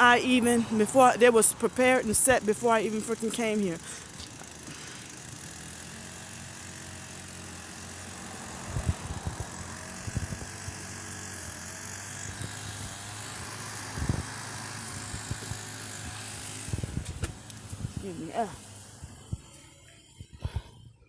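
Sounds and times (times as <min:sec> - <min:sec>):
low mechanical hum: 0:00.0 - 0:21.0.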